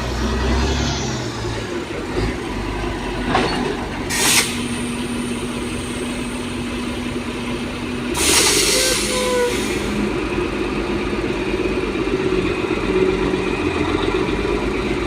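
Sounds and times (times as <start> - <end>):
diesel engine running: 0.0 - 15.0
short hiss: 4.1 - 4.8, 8.2 - 9.9.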